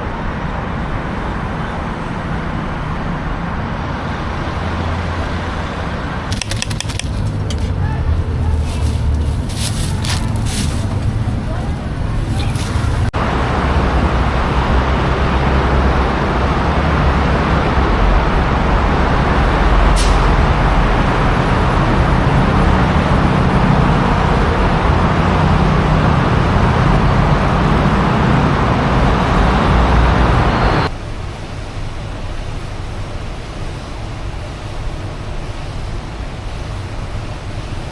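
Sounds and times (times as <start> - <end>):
city road traffic: 0.0 - 37.9
short sharp hiss: 20.0 - 20.2.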